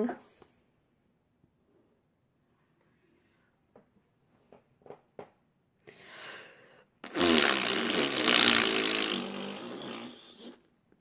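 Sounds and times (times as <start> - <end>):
girl breathing in: 5.9 - 6.9.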